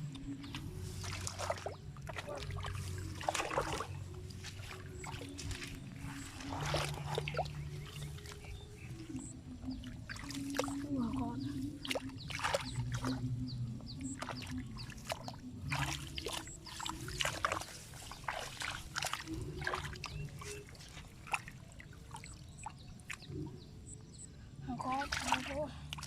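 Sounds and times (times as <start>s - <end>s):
low steady hum: 0.0s - 26.0s
shallow water sloshing and splashing: 0.0s - 26.0s.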